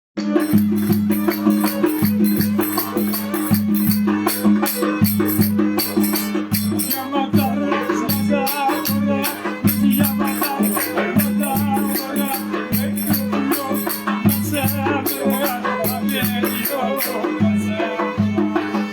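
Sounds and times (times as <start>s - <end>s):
folk melody: 0.2s - 18.9s
percussion beat: 0.2s - 18.9s.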